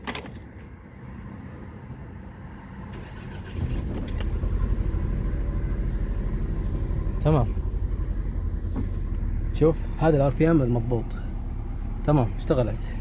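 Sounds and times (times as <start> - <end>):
car engine running: 2.9 - 13.0.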